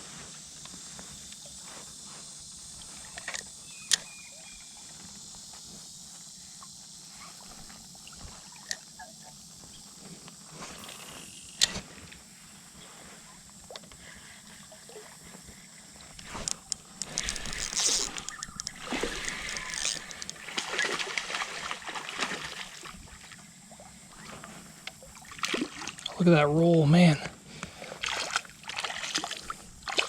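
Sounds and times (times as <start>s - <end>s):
high-pitched outdoor hiss: 0.0s - 30.0s
sharp clicks: 16.2s - 20.4s.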